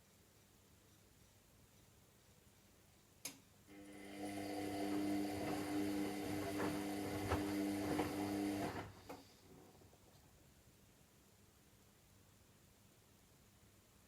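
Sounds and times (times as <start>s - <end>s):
washing machine motor humming: 3.7s - 9.8s.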